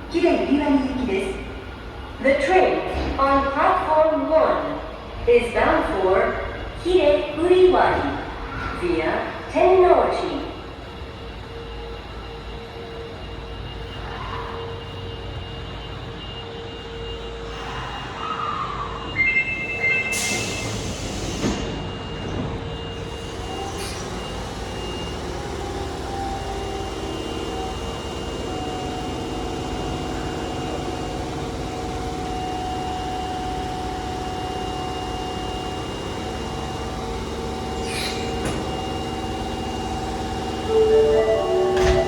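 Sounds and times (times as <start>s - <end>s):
electric train motors whining: 22.9s - 42.0s
two-tone chime: 40.7s - 42.0s.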